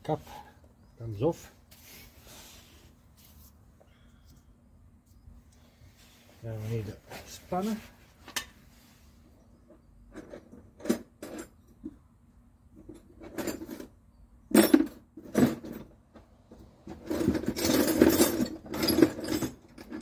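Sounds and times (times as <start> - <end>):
metal spanners clinking and rattling: 12.8 - 15.9, 16.9 - 20.0.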